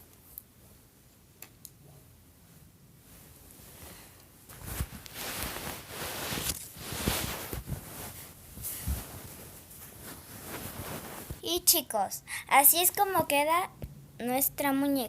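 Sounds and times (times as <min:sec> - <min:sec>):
rustling and scratchy scraping: 0:03.1 - 0:11.5.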